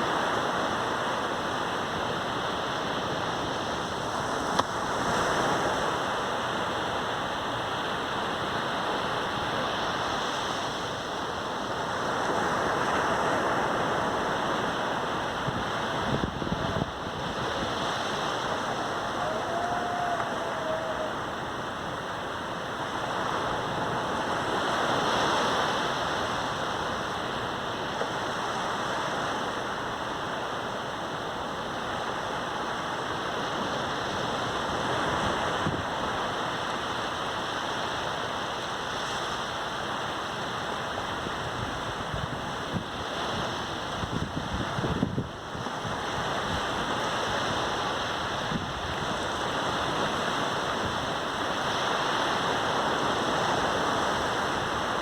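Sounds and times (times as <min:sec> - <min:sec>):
waves breaking on sandy beach: 0:00.0 - 0:55.0.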